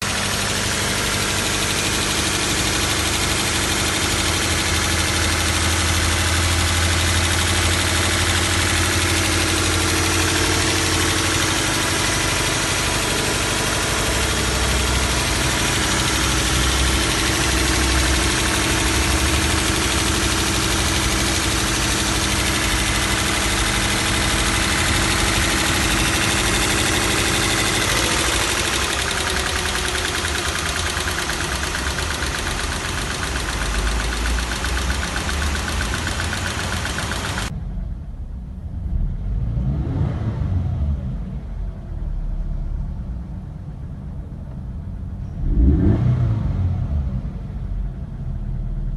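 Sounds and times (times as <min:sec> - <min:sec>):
engine rattle: 0:00.0 - 0:37.6
car engine idling: 0:00.0 - 0:39.4.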